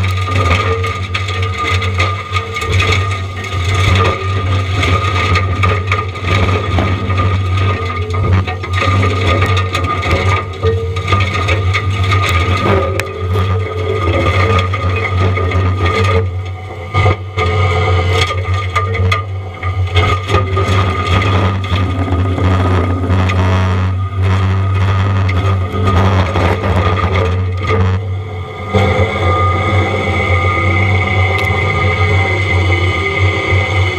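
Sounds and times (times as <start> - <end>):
mulching head grinding wood: 0.0 - 28.1
wood cracking and scraping: 0.0 - 28.1
diesel engine running under load: 0.0 - 33.9.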